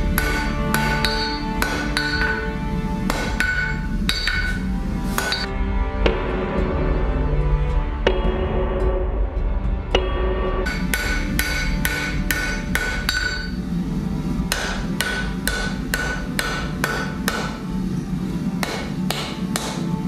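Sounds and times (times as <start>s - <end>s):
hammer striking steel on anvil: 0.0s - 6.5s, 9.9s - 13.7s, 14.4s - 17.9s, 18.5s - 20.0s.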